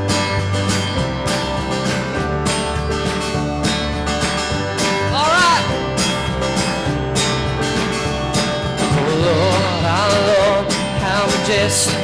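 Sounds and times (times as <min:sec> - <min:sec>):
drums: 0:00.0 - 0:12.0
strummed acoustic guitar: 0:00.0 - 0:12.0
person singing: 0:08.9 - 0:12.0.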